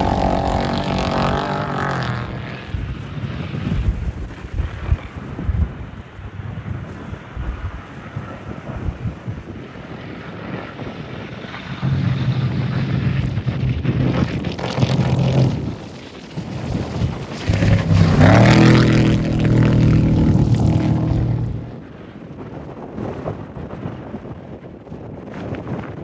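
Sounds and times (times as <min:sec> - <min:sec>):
engines revving hard: 0:00.0 - 0:02.8, 0:11.8 - 0:15.8, 0:17.4 - 0:21.8
wind buffeting microphone: 0:00.0 - 0:26.0.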